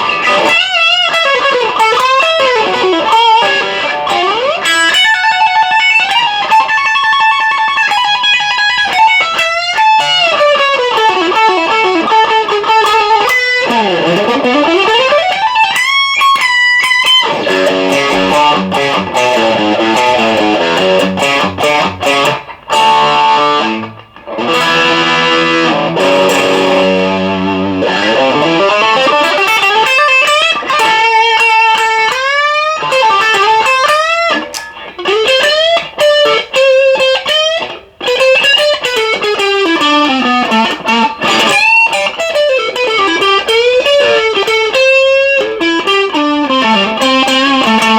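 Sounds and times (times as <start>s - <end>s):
electric guitar lead with bends: 0.0s - 47.9s.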